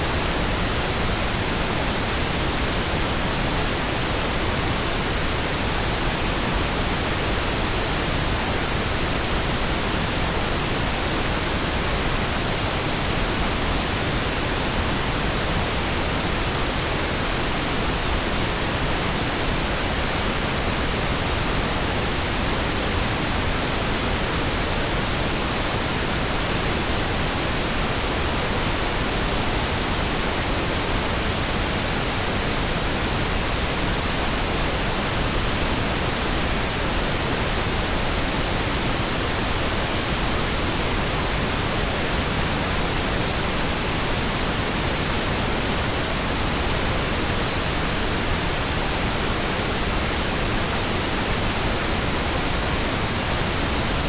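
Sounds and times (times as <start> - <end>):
steady pink noise hiss: 0.0 - 54.0.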